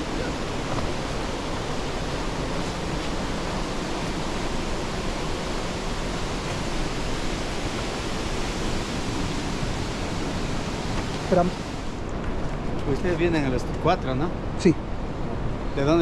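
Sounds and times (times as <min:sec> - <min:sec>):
waterfall rushing: 0:00.0 - 0:12.1.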